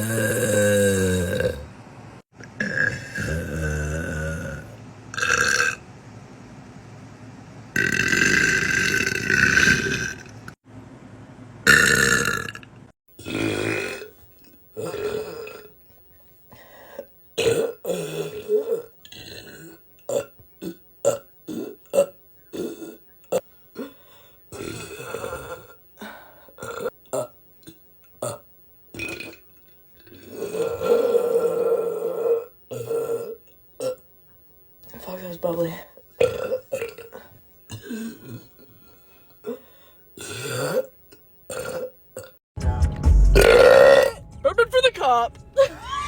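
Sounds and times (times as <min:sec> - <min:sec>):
women burping: 0:00.0 - 0:01.6.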